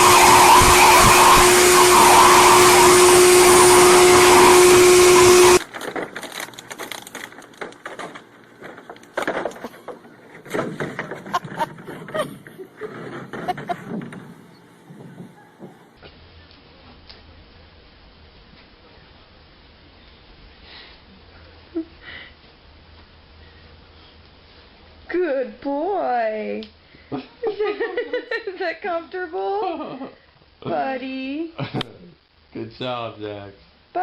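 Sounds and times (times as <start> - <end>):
blow-dryer humming: 0.0 - 7.3
scattered knocks: 12.8 - 15.8.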